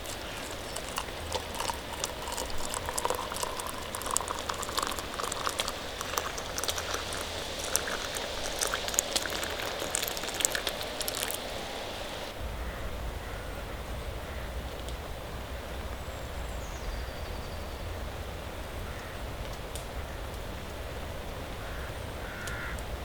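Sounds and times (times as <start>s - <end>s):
campfire pops and crackles: 0.0s - 11.6s
food bubbling and sizzling: 0.0s - 12.4s.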